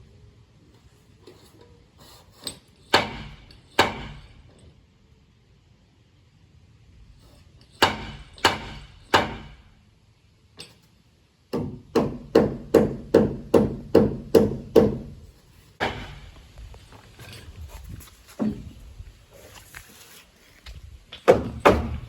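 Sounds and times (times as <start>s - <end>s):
hammer striking wood: 2.9s - 4.3s, 7.8s - 9.6s, 11.5s - 15.2s, 15.8s - 16.3s, 21.2s - 22.0s.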